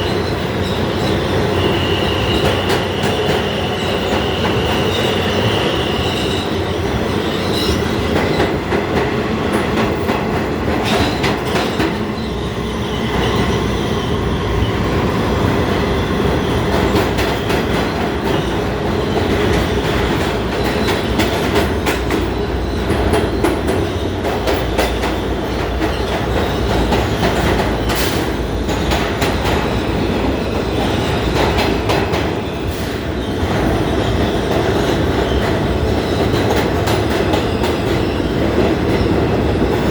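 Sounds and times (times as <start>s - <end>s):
high wheel squeal: 0.0s - 8.5s, 11.7s - 17.5s
subway train rumbling: 0.0s - 39.9s.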